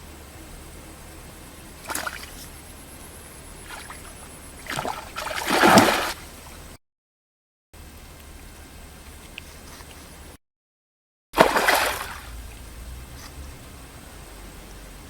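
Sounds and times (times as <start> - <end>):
water splashing: 1.6 - 6.7, 11.4 - 14.7.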